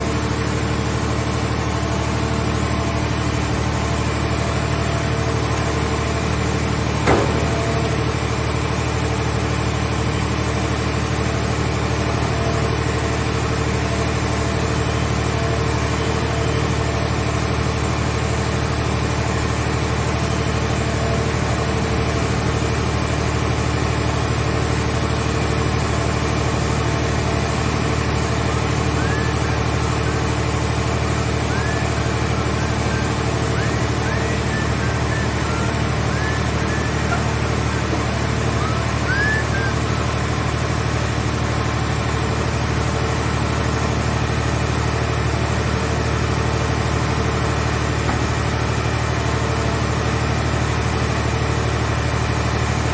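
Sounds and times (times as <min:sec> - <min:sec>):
power unit idling: 0:00.0 - 0:52.9
metallic knock: 0:07.1 - 0:08.0.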